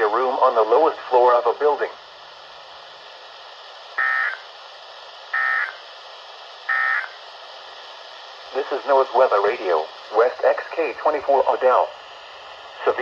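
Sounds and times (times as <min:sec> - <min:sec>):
radio static hiss: 0:00.0 - 0:13.0
buzzy digital data bursts: 0:03.9 - 0:04.5, 0:05.3 - 0:05.9, 0:06.6 - 0:07.2.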